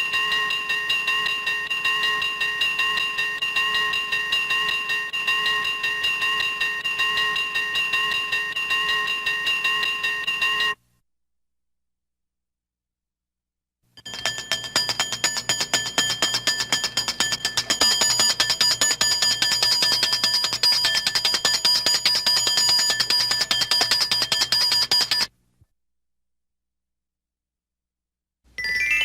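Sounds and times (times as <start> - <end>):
alarm bell ringing: 0.0 - 10.8, 14.0 - 25.3, 28.6 - 29.0.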